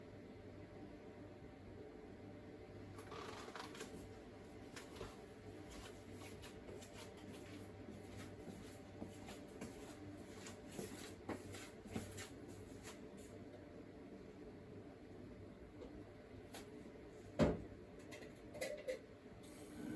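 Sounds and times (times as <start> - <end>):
refrigerator humming: 15.0 - 19.9.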